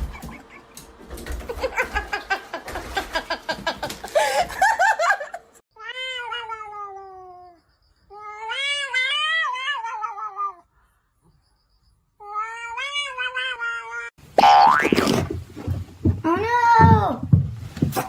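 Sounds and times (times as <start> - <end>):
cat yowling: 8.2 - 10.6.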